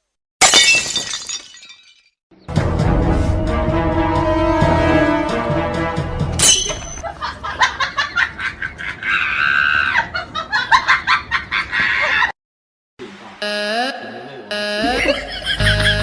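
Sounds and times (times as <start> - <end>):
music: 2.3 - 6.4, 15.6 - 16.0.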